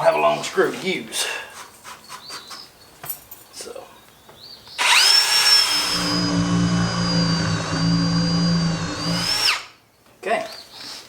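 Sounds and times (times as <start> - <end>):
power drill boring into wood: 4.8 - 9.7.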